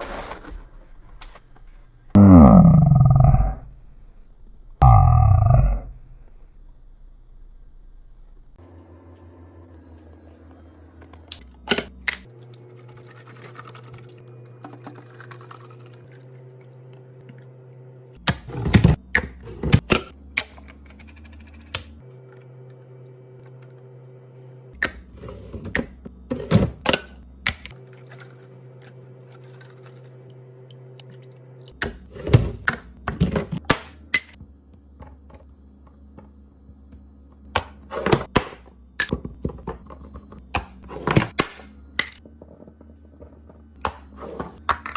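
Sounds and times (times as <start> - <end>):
fridge low hum: 0.1 - 44.9
items clicking and knocking on shelves: 31.8 - 44.9.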